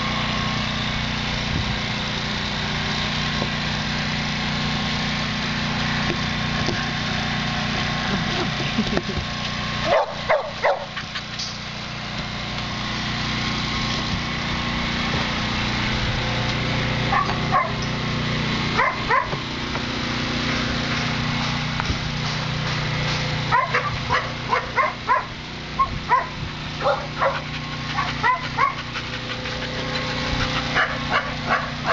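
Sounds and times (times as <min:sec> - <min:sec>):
mechanical hum: 0:00.0 - 0:31.9
dogs barking: 0:09.8 - 0:11.4, 0:17.0 - 0:17.9, 0:18.7 - 0:19.4, 0:23.4 - 0:31.9.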